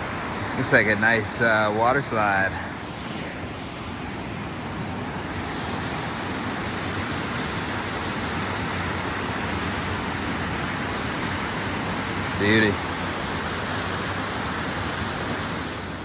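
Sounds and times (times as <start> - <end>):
river water rushing over rock: 0.0 - 16.0.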